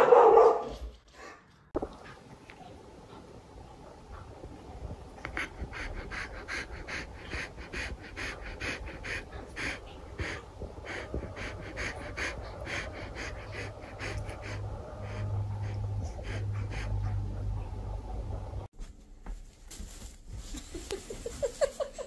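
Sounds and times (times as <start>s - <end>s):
dog panting: 2.0s - 18.7s.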